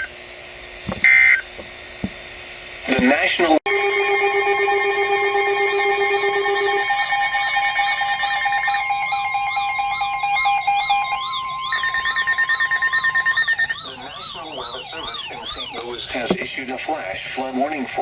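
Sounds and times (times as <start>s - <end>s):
warbling siren-like tone: 3.7s - 16.5s
steady electronic tones: 3.7s - 16.8s.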